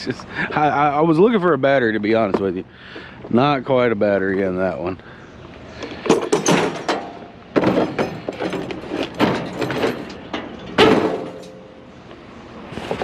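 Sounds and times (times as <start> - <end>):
scrap clattering and rattling: 5.9 - 11.7
loud strikes on scrap: 10.7 - 11.7.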